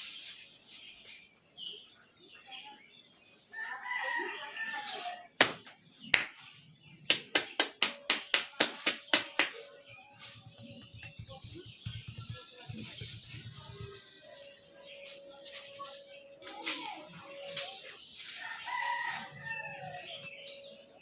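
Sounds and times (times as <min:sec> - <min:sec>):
hands slapping a head: 0:05.4 - 0:06.5, 0:07.1 - 0:09.7.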